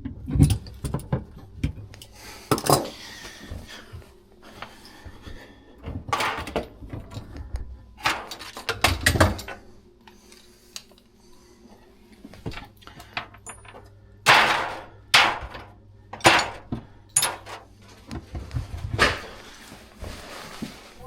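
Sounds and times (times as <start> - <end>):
low steady hum: 0.0 - 21.0
metal tools knocking and clinking: 2.5 - 2.9, 12.5 - 15.6, 16.2 - 17.6.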